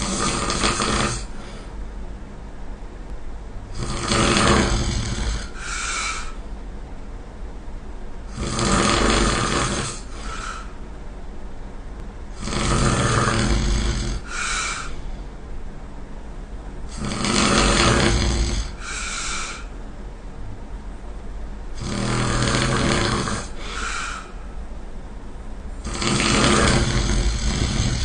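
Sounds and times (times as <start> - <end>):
person snoring: 0.0 - 1.6, 3.7 - 6.4, 8.3 - 10.8, 12.3 - 15.0, 16.9 - 19.8, 21.8 - 24.4, 25.8 - 28.0.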